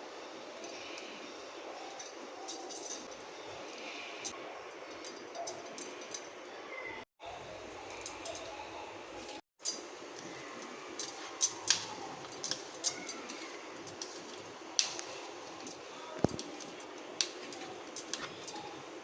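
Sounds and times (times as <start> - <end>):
kitchen utensils clinking: 1.8 - 6.7, 7.9 - 19.0.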